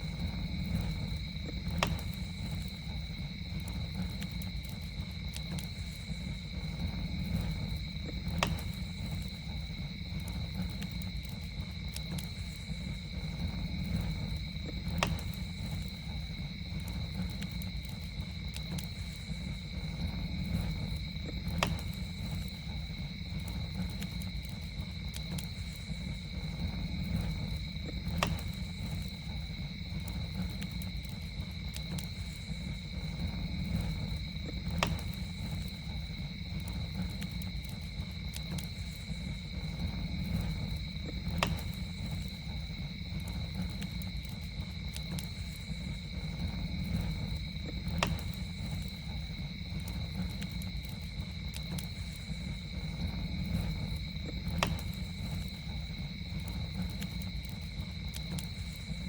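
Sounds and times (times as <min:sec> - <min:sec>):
campfire crackling: 0:00.0 - 0:59.0.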